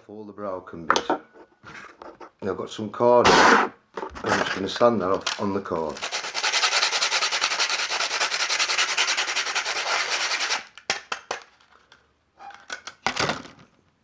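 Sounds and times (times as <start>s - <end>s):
rod rubbed on sandpaper: 3.3s - 3.7s, 6.0s - 10.6s.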